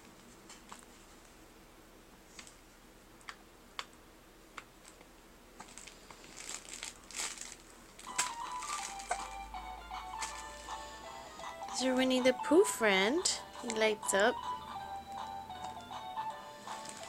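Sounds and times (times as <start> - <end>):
light crinkling: 4.8 - 9.4, 16.6 - 17.0
toy playing electronic tune: 8.1 - 17.0.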